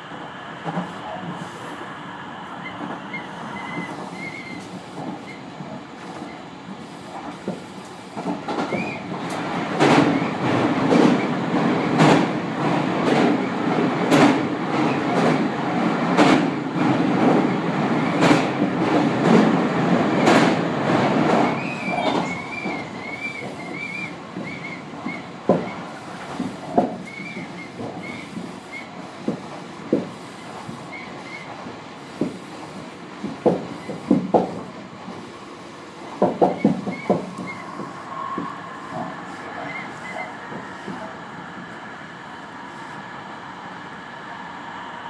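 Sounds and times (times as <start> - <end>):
train rumbling: 0.0 - 45.0
wheels clacking over rail joints: 16.1 - 35.3, 36.0 - 41.8
faint wavering squeal: 36.9 - 40.4.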